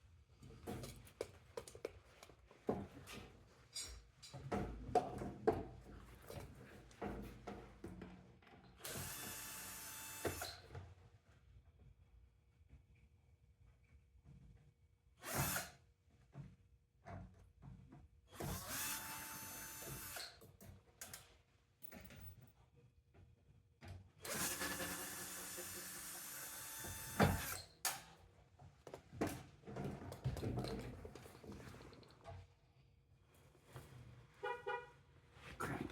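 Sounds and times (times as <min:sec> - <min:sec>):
power drill running: 0:08.9 - 0:10.5, 0:18.4 - 0:20.2, 0:24.2 - 0:27.6.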